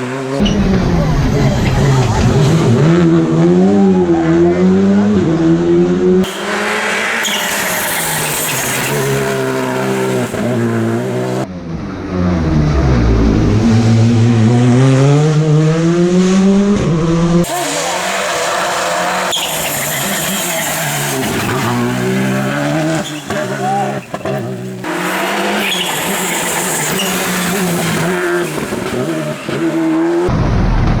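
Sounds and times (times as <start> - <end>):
rally car engines revving: 0.0 - 31.0.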